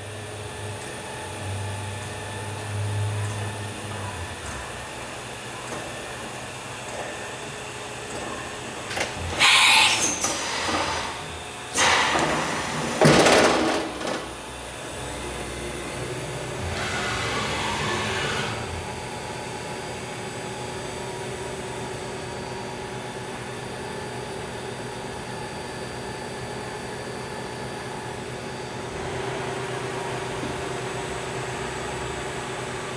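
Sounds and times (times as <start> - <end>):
machine hiss: 9.3 - 13.4.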